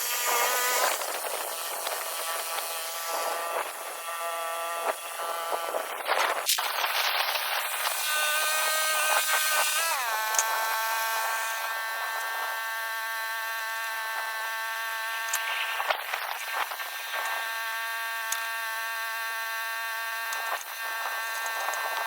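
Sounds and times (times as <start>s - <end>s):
bandsaw mill engine sawing wood: 0.0s - 22.0s.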